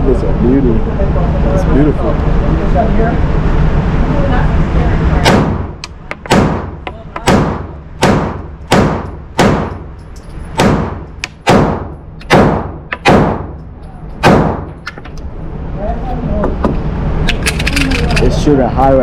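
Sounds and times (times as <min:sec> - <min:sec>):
pistol shots with ringing tail: 0:06.3 - 0:09.9, 0:10.5 - 0:13.6, 0:14.2 - 0:14.8.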